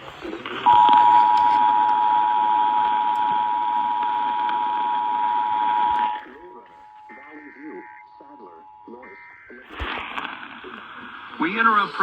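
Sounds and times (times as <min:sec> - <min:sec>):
radio hiss: 0:00.0 - 0:12.0
two-tone alarm: 0:00.6 - 0:09.6.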